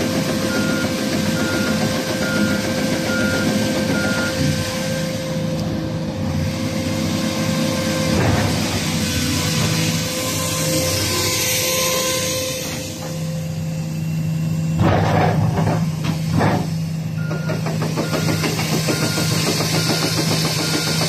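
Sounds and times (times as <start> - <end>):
excavator diesel engine running: 0.0 - 21.0
travel alarm beeping: 0.4 - 4.4, 17.1 - 21.0.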